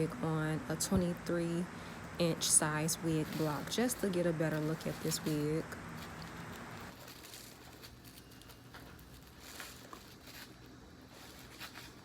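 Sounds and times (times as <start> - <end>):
wig rustling and handling: 3.0 - 12.0.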